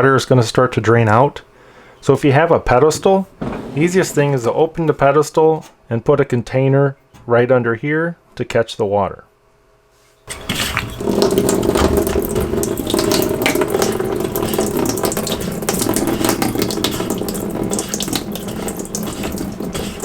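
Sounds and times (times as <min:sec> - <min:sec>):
water splashing into container: 0:10.3 - 0:20.0.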